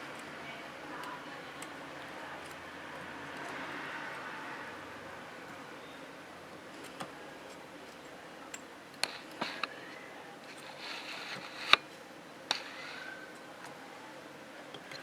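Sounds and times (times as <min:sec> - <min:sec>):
light clicks and taps: 0:00.0 - 0:04.3, 0:06.5 - 0:09.8.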